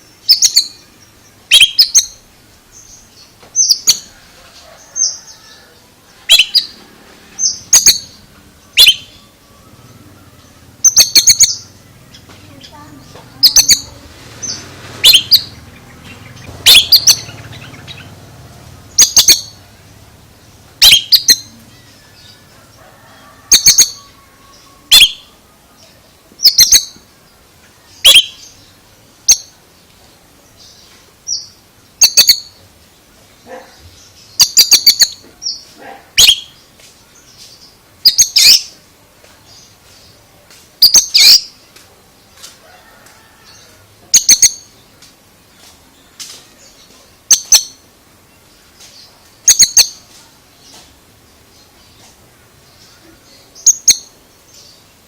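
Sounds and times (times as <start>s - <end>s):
bird calling in high bursts: 12.6s - 15.6s, 16.5s - 18.1s, 20.8s - 21.5s, 28.0s - 28.4s, 36.2s - 36.5s.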